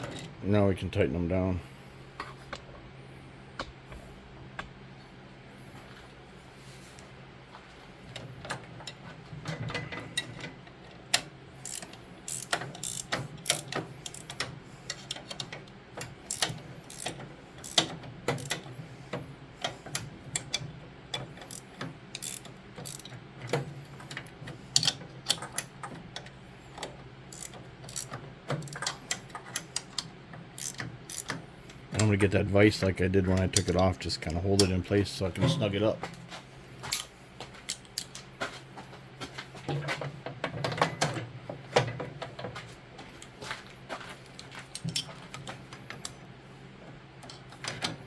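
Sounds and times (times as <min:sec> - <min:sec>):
ratchet wrench clicking: 0:11.6 - 0:15.5, 0:16.2 - 0:18.6, 0:21.2 - 0:23.1, 0:27.3 - 0:31.4.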